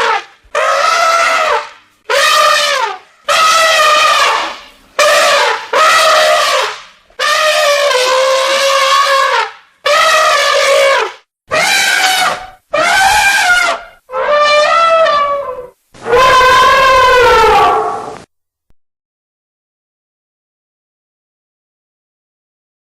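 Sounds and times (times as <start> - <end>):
elephant trumpeting: 0.0 - 18.2.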